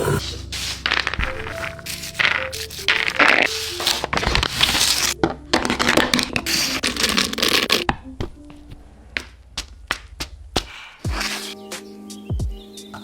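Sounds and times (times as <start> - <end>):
food scraping and crackling: 0.0 - 11.6
sharp taps: 9.2 - 11.3.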